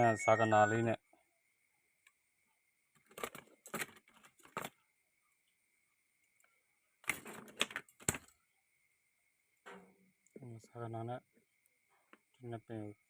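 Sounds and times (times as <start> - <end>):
faint high-pitched tone: 0.0 - 2.6.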